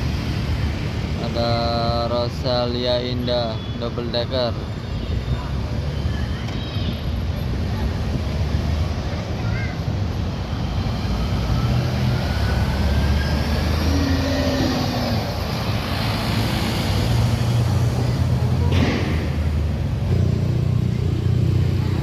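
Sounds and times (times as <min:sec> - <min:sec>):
tyre and road noise: 0:00.0 - 0:22.0
vehicle passing close: 0:10.3 - 0:22.0.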